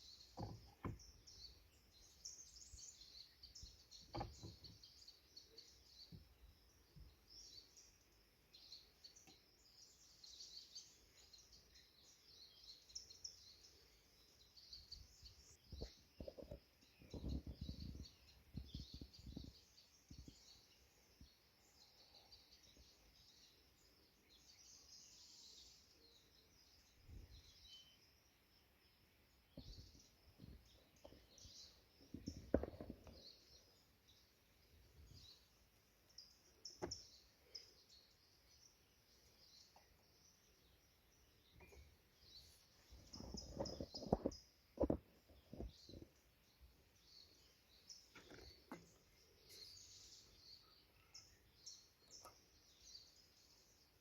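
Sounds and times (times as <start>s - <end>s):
small birds chirping: 0.0s - 54.0s.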